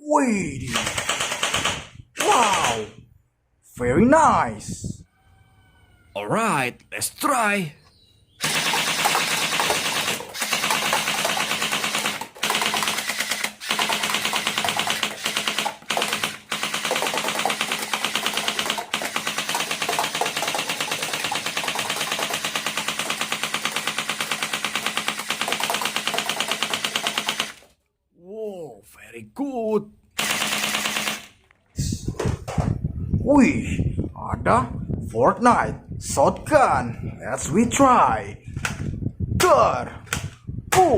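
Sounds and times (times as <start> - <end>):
toy gun machine-gun rattle: 0.7 - 1.9, 8.4 - 27.8, 30.2 - 31.4
toy motor hum: 8.4 - 27.7.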